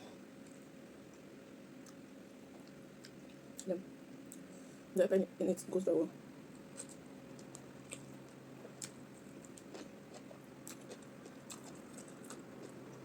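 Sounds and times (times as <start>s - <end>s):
faint steady hum: 0.0s - 13.0s
chewing: 6.7s - 13.0s.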